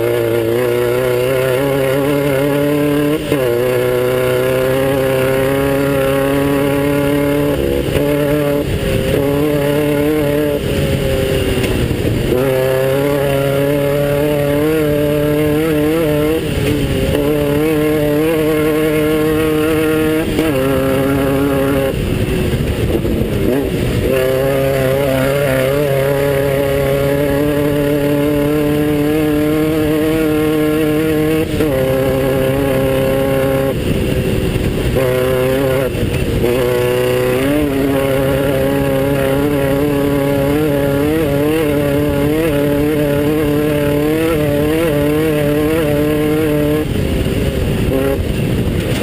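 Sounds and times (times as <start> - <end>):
buggy engine running hard: 0.0 - 49.0.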